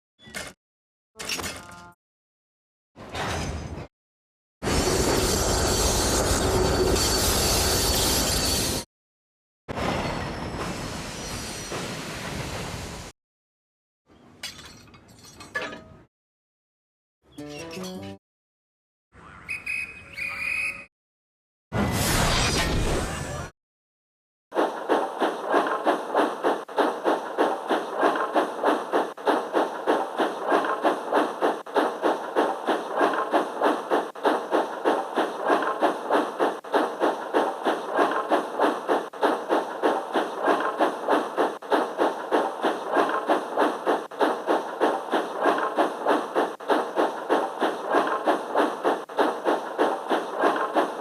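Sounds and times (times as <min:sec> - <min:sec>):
steam locomotive chuffing: 0:24.6 - 0:51.0.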